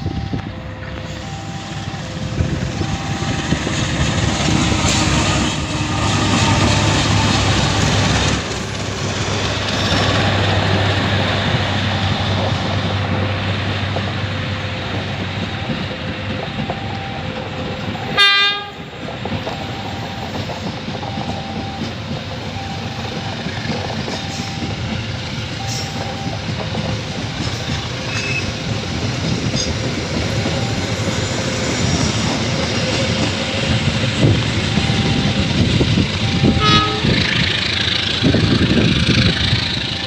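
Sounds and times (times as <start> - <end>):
diesel locomotive hum: 0.0 - 40.0
train horn blast: 18.2 - 18.9, 36.4 - 37.4.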